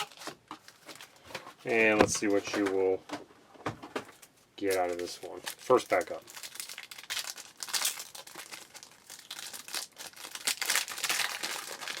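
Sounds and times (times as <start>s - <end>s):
foil wrapper crinkling and tearing: 0.0s - 1.2s, 4.6s - 12.0s.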